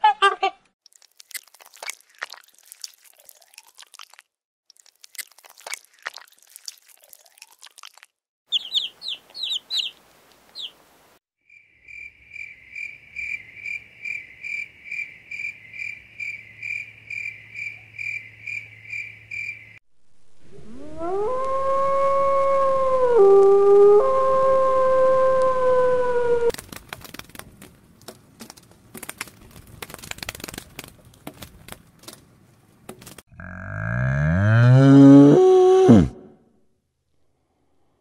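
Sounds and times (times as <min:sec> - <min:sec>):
high chirps: 0:08.5 - 0:10.0
repeated high chirping call: 0:08.5 - 0:10.0
long animal howl: 0:20.5 - 0:26.5, 0:33.4 - 0:36.4.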